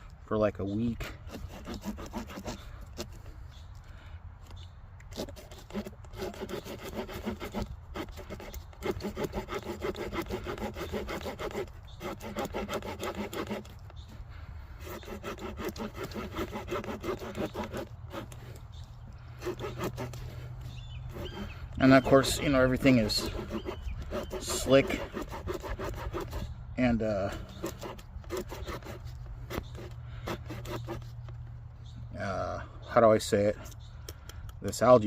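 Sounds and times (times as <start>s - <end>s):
small saw cutting wet stick: 0.7s - 3.4s, 4.4s - 31.4s.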